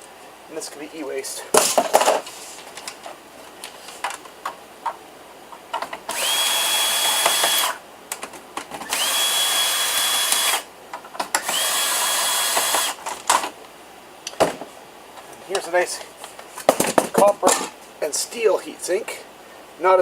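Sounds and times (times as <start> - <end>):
power drill motor whine: 6.1 - 7.8, 8.8 - 10.7, 11.4 - 13.0.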